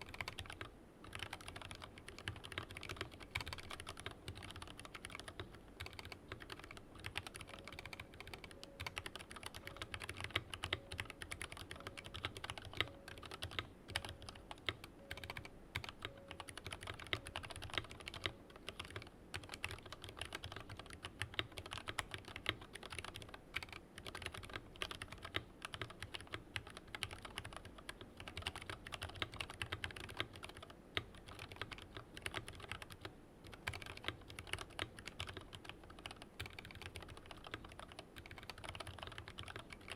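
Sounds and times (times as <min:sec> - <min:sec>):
fast typing on keyboard: 0:00.0 - 0:39.9.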